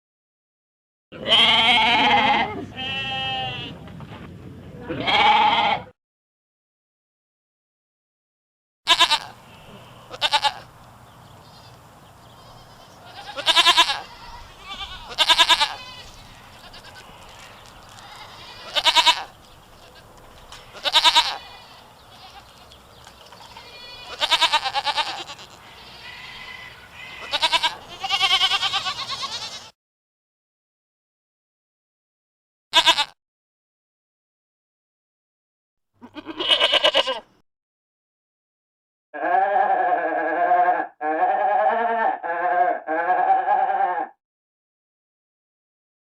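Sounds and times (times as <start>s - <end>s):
goats bleating: 1.2s - 3.7s, 4.9s - 5.9s, 8.9s - 10.7s, 11.5s - 29.7s, 32.8s - 33.2s, 36.0s - 37.3s, 39.2s - 44.1s.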